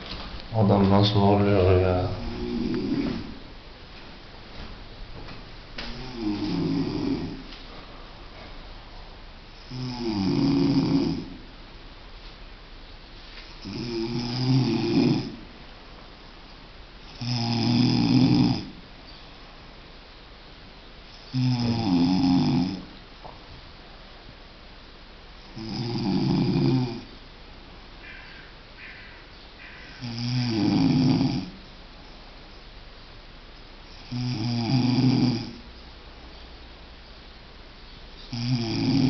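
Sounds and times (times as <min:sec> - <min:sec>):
man snoring loudly: 0:01.9 - 0:03.4, 0:05.9 - 0:07.5, 0:09.6 - 0:11.4, 0:13.6 - 0:15.4, 0:17.0 - 0:18.8, 0:21.3 - 0:22.9, 0:25.4 - 0:27.1, 0:30.0 - 0:31.6, 0:33.9 - 0:35.6, 0:38.3 - 0:39.0
quiet breathing: 0:02.1 - 0:03.5.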